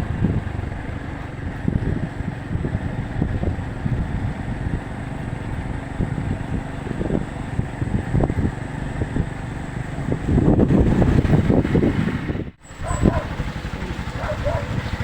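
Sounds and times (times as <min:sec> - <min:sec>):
strong wind buffeting microphone: 0:00.0 - 0:15.0.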